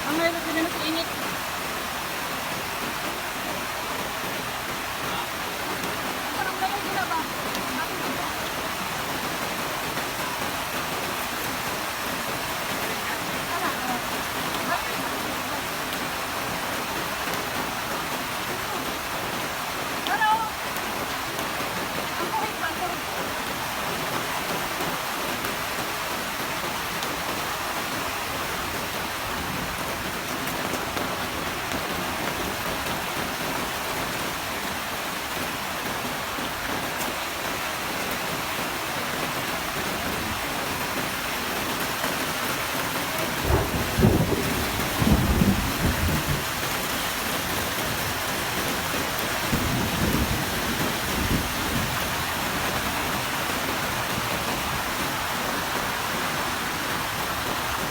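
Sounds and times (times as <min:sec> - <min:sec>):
heavy rain falling: 0:00.0 - 0:57.9
thunder rumbling: 0:43.2 - 0:53.3.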